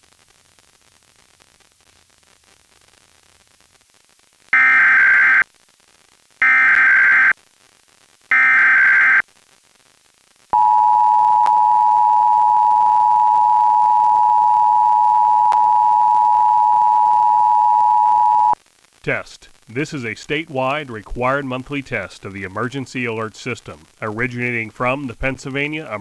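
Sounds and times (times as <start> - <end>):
digital data tone bursts: 4.6 - 5.4, 6.4 - 7.3, 8.3 - 9.2, 10.6 - 18.6
two-tone attention signal: 6.4 - 7.3, 10.6 - 18.6.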